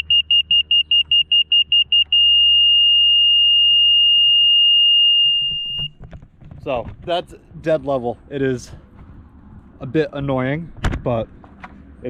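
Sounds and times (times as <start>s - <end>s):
quick high beeps: 0.0s - 5.9s
steady unbroken tone: 0.0s - 6.1s.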